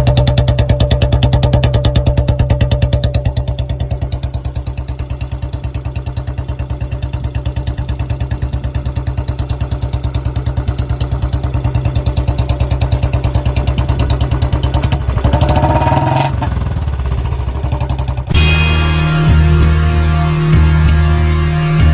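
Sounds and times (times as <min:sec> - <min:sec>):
motorcycle engine thumping: 0:00.0 - 0:19.8
brief higher tone: 0:18.3 - 0:21.9.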